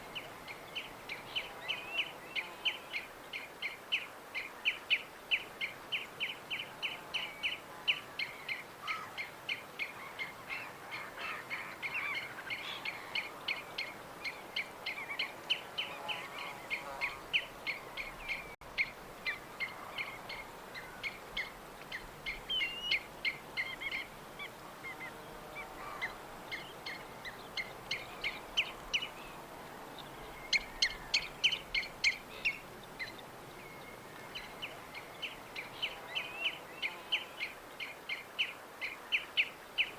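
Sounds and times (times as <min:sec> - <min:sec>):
faint outdoor hiss: 0:00.0 - 0:39.9
songbirds chirping: 0:00.0 - 0:39.9.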